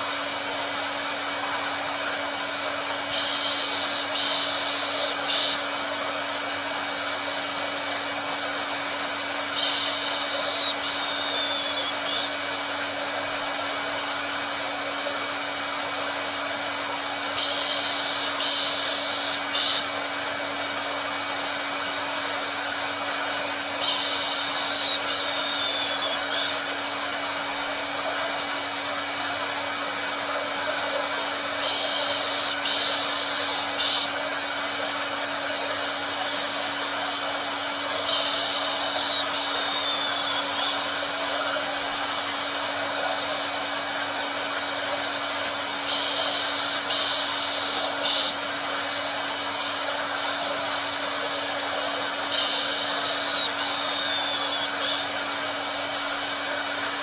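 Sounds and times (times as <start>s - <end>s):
hair dryer running: 0.0s - 57.0s
high-pitched hiss: 3.0s - 5.7s, 9.5s - 12.4s, 17.4s - 19.9s, 23.7s - 26.7s, 31.6s - 34.2s, 38.0s - 41.8s, 45.8s - 48.5s, 52.3s - 55.1s.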